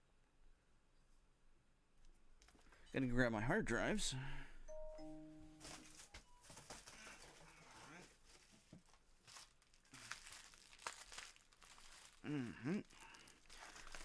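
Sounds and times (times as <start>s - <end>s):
soft rustling: 5.6s - 12.3s
person humming: 12.2s - 13.1s.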